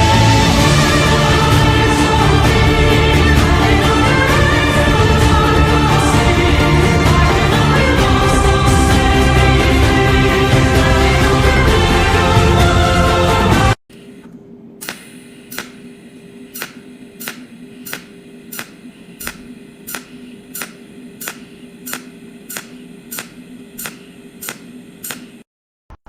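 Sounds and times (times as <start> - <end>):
small machine humming: 13.9 - 25.5.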